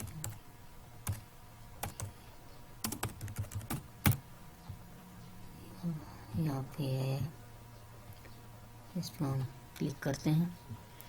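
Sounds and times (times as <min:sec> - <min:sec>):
typing on computer keyboard: 0:00.0 - 0:00.4, 0:01.8 - 0:02.1, 0:02.8 - 0:04.2.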